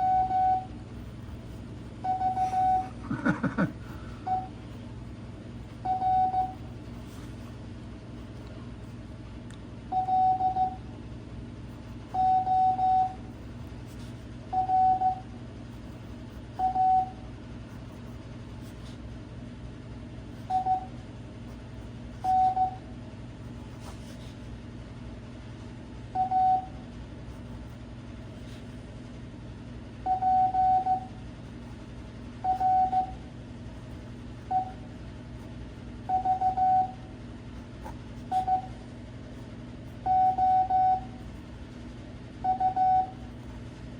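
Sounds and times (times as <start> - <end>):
morse code beeps: 0.0 - 0.7, 2.0 - 3.0, 4.2 - 4.6, 5.8 - 6.6, 9.9 - 10.8, 12.2 - 13.2, 14.5 - 15.3, 16.6 - 17.2, 20.4 - 20.9, 22.2 - 22.8, 26.2 - 26.8, 30.1 - 31.1, 32.4 - 33.2, 34.4 - 34.8, 36.1 - 37.1, 38.3 - 38.8, 40.0 - 41.2, 42.4 - 43.3
steady low hum: 0.0 - 43.9.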